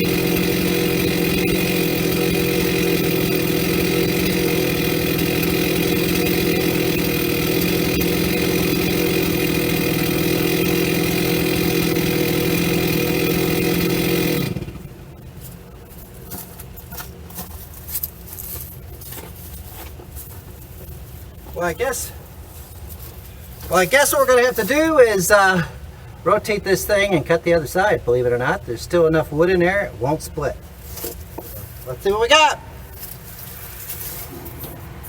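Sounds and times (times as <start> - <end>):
chainsaw cutting wood: 0.0 - 15.2.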